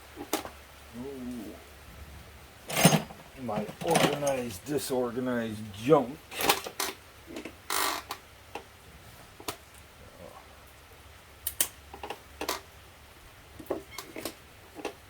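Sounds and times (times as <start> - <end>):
tools clicking and knocking: 2.7 - 4.4.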